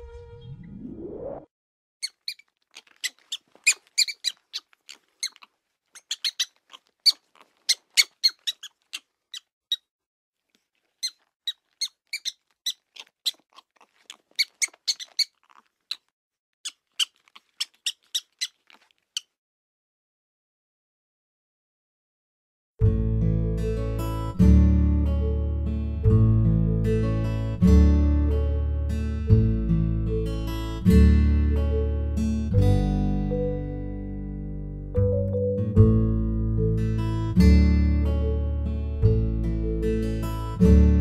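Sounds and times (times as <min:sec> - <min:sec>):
short rising sweep: 0:00.4 - 0:01.5
prairie dog chirping barks: 0:02.0 - 0:09.8, 0:10.8 - 0:16.1, 0:16.7 - 0:19.3.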